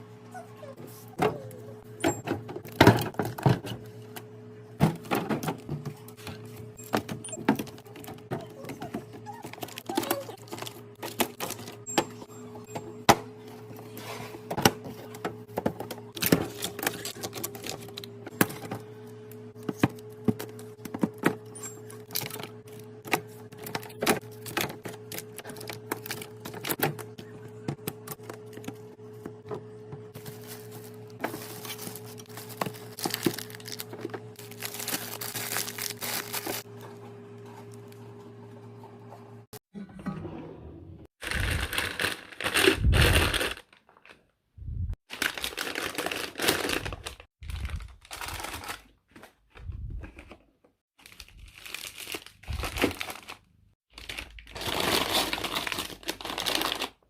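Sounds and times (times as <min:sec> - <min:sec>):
plastic wrappers rustling: 0:09.4 - 0:11.8, 0:16.1 - 0:18.7, 0:21.8 - 0:27.2, 0:30.2 - 0:36.7, 0:41.2 - 0:44.2, 0:45.1 - 0:49.2, 0:51.0 - 0:57.0
packages being set down: 0:30.1 - 0:36.7.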